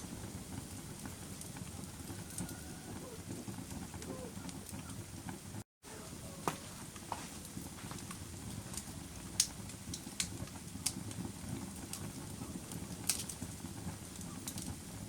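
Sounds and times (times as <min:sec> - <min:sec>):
fire crackles and pops: 0:00.0 - 0:15.0
wood fire rumbling: 0:00.0 - 0:15.0.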